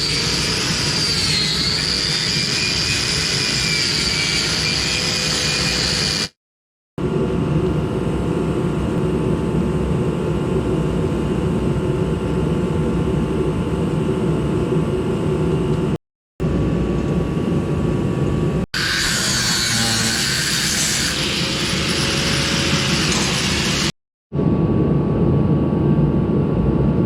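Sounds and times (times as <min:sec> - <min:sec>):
angle grinder grinding steel: 0:00.0 - 0:06.4, 0:18.8 - 0:23.9.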